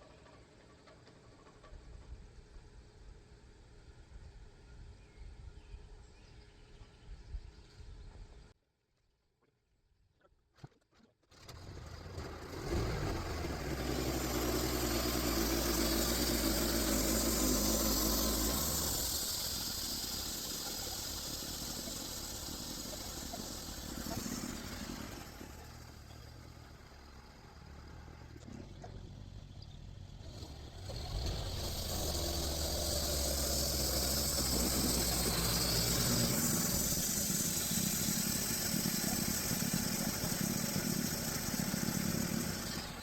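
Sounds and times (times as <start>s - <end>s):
sawmill engine drone: 11.4s - 43.0s
band blade hissing through log: 12.7s - 25.9s, 30.8s - 43.0s.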